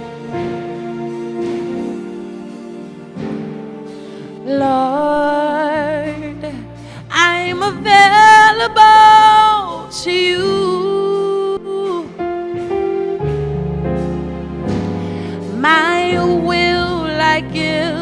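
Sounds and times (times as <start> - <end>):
held keyboard chords: 0.0 - 18.0
person singing with vibrato: 4.2 - 12.7, 15.3 - 18.0.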